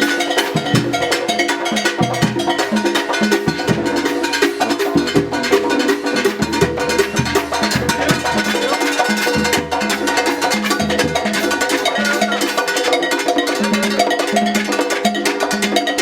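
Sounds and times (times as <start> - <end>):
clanking cowbell beat: 0.0 - 16.0
drums and congas: 0.0 - 16.0
brass band playing: 3.6 - 12.6.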